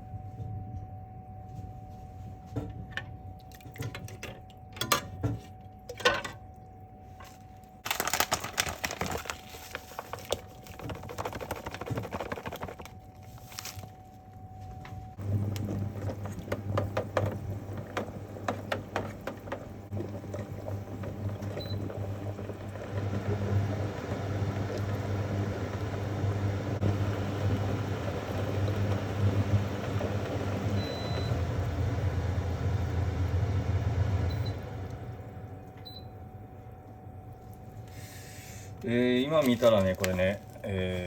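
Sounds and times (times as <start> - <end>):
gas stove burning: 15.2 - 36.8.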